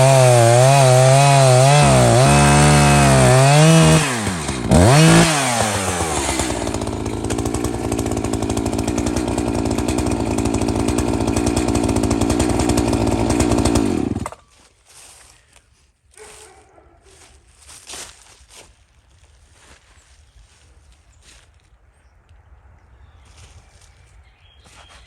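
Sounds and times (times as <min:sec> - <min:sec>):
electric chainsaw cutting log: 0:00.0 - 0:14.4.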